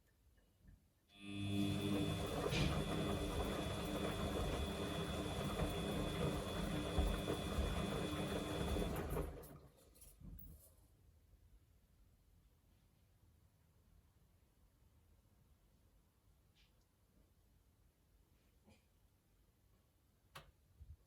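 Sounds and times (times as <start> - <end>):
washing machine motor humming: 1.2 - 9.6.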